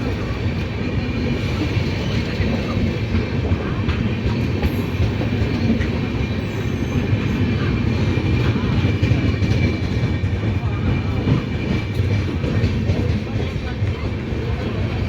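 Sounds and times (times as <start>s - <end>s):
train wheels rumbling on rails: 0.0s - 15.0s.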